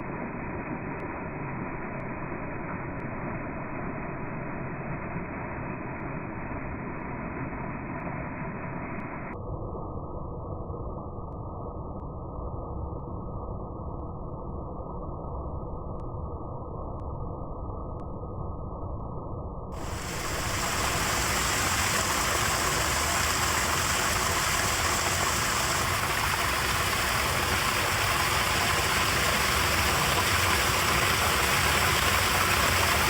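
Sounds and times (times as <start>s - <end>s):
rainwater rushing into storm drain: 19.8s - 33.0s.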